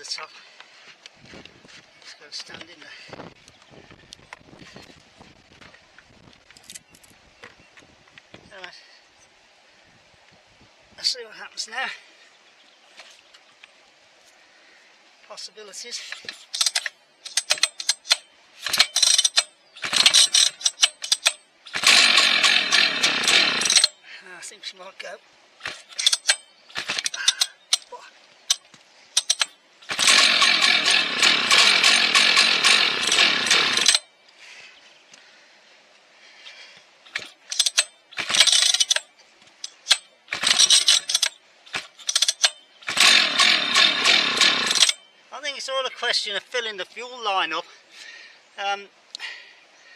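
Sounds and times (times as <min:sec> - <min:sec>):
recoil starter ratcheting clicks: 0:16.1 - 0:24.0, 0:25.6 - 0:27.9, 0:29.2 - 0:34.1, 0:37.1 - 0:45.0.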